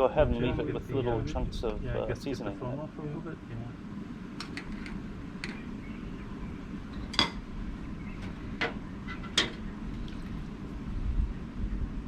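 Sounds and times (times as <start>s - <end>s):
steady low background noise: 0.0s - 12.0s.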